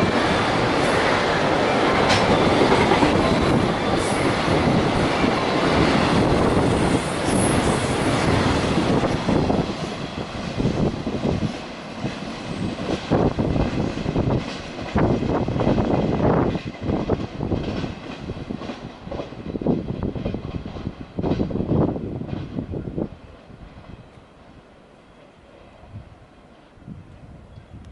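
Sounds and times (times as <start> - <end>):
wheels clacking over rail joints: 0.0 - 10.7
train wheels roaring on rail: 0.0 - 27.9.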